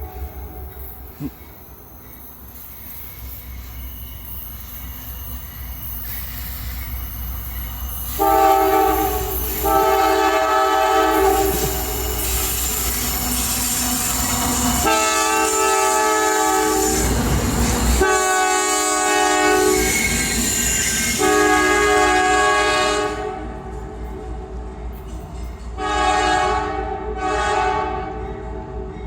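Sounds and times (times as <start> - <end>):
train passing rumble: 0.0 - 29.0
train horn blasts: 8.2 - 11.9, 14.8 - 17.2, 18.0 - 20.0, 21.2 - 23.7, 25.8 - 28.4.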